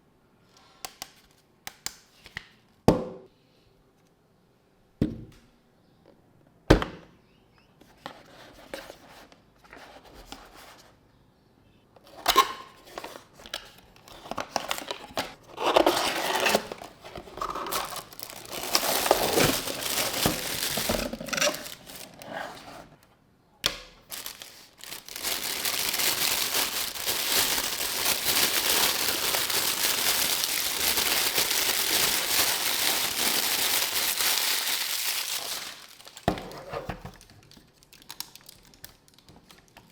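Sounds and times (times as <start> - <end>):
packaging crinkling: 14.0 - 23.0, 24.0 - 39.9.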